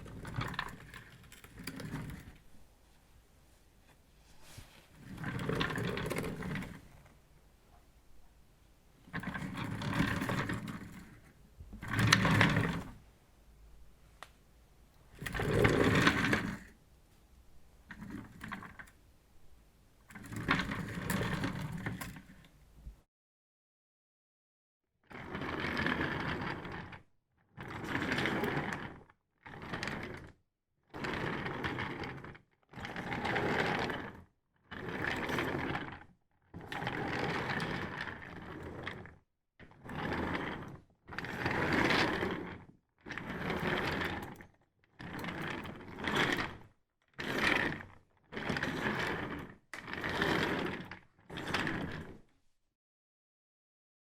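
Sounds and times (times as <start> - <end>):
office chair being moved: 0.1 - 2.4, 4.2 - 7.0, 9.2 - 11.1, 11.8 - 13.0.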